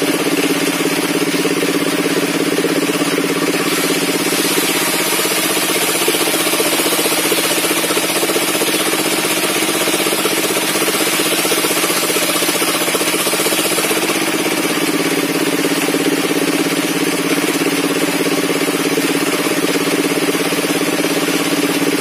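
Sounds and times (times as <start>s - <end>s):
circular saw engine running: 0.0s - 22.0s.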